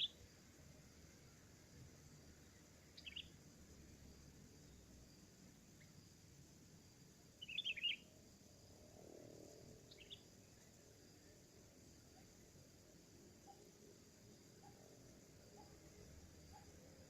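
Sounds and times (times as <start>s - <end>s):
bulbul chirping calls: 3.0s - 3.3s, 7.4s - 8.0s, 9.9s - 10.2s.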